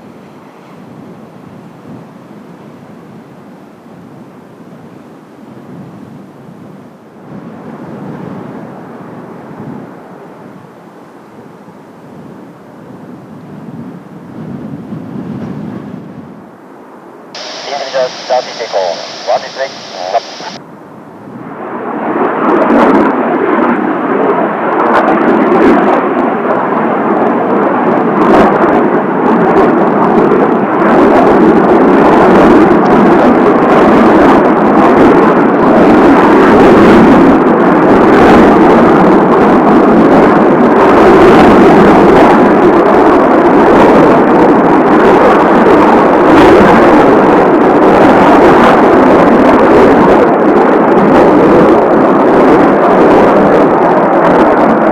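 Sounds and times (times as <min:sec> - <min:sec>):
wind gusts hitting microphone: 0:00.0 - 0:16.7, 0:17.4 - 0:20.6, 0:21.2 - 0:54.9
jet engine roar: 0:17.4 - 0:20.6, 0:21.2 - 0:54.9.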